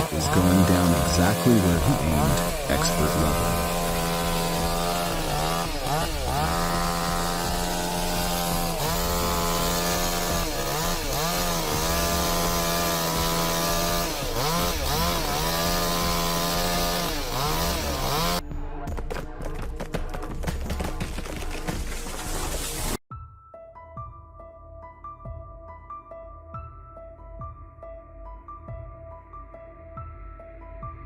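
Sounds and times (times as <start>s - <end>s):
chainsaw cutting wood: 0.0s - 18.4s, 20.6s - 23.0s.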